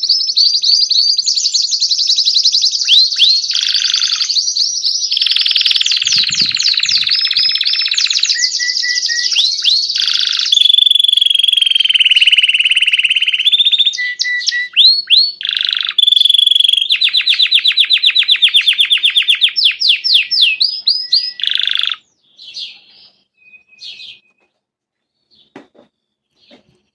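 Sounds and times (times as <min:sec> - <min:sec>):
canary singing trills: 0:00.0 - 0:24.6
faint short bird chirps: 0:20.9 - 0:26.9.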